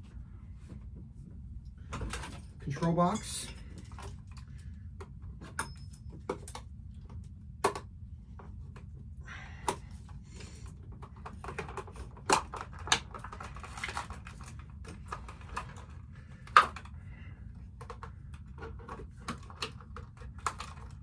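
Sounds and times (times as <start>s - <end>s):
plastic packaging clicks and rustling: 10.9s - 16.9s.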